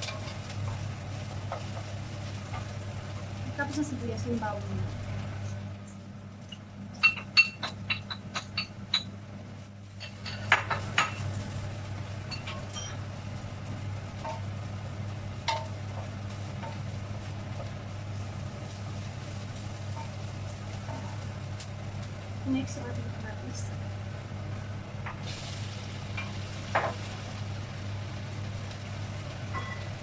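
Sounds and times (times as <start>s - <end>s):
onion and garlic sizzling in oil: 0.0s - 6.2s, 6.8s - 30.0s
metal utensil clinking on pan: 29.5s - 29.9s.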